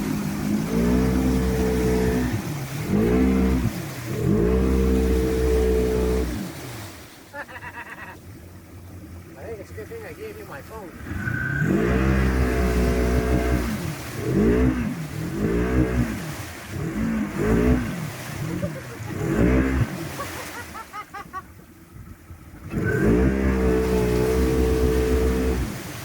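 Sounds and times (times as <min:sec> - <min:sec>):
engine revving hard: 0:00.0 - 0:06.6, 0:10.9 - 0:20.4, 0:22.6 - 0:26.0.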